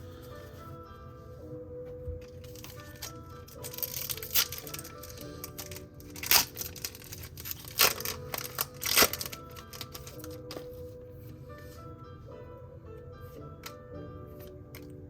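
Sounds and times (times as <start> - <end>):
soft background music: 0.0 - 15.0
crinkling card packs: 2.2 - 10.8
sharp crackles: 2.6 - 10.4.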